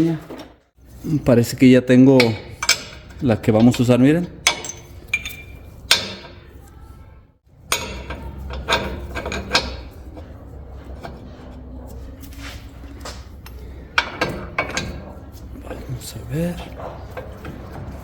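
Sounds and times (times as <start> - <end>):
metal knocks and clinks: 2.1 - 6.6, 7.6 - 12.0, 12.8 - 15.8, 16.6 - 18.0.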